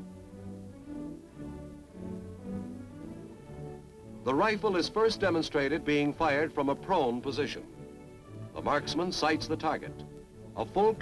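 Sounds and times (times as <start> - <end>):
low strings sustained notes: 0.0 - 11.0.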